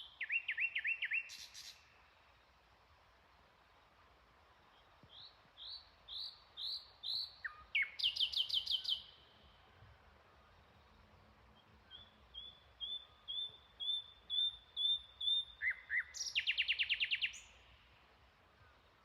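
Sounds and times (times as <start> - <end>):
bird singing: 0.0 - 2.0, 4.7 - 17.8.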